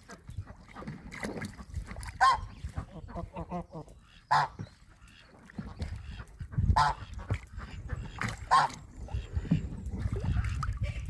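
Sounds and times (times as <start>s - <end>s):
goose honking: 2.2s - 4.6s, 6.0s - 7.2s, 7.8s - 9.6s.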